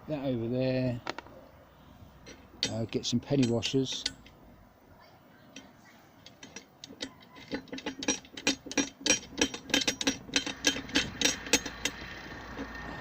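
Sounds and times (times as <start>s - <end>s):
metallic clicking of nut on bolt: 2.3s - 4.4s, 5.6s - 12.7s.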